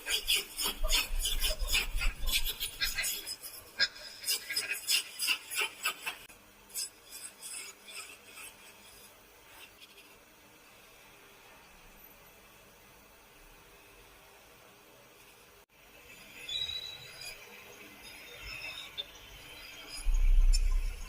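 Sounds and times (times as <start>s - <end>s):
tool scraping wood: 0.0s - 10.2s.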